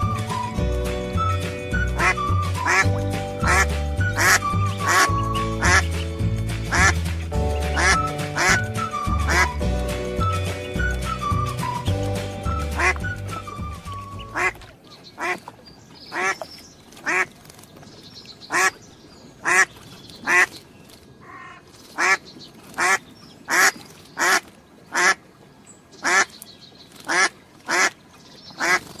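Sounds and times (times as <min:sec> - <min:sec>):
duck quacking: 0:02.0 - 0:06.0, 0:06.7 - 0:07.0, 0:07.6 - 0:08.6, 0:09.2 - 0:09.6, 0:12.6 - 0:13.0, 0:14.2 - 0:14.6, 0:22.8 - 0:25.2.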